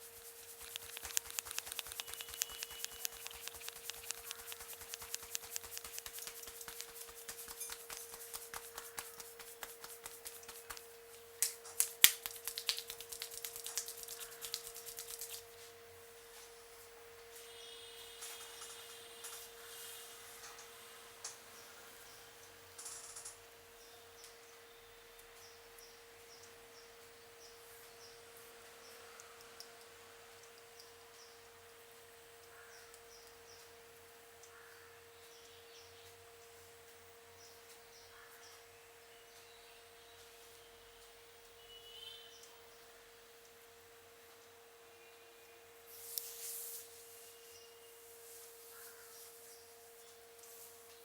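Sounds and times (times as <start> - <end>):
faint high chirps: 0.0 - 8.2
faint clicks: 0.0 - 15.5
sharp snaps: 0.0 - 15.5
faint steady hum: 0.0 - 51.0
hands tapping on a head: 0.1 - 15.4.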